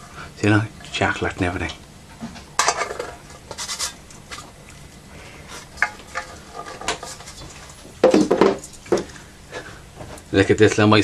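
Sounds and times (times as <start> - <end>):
metal tins clinking and rattling: 2.6 - 4.4, 5.8 - 9.1.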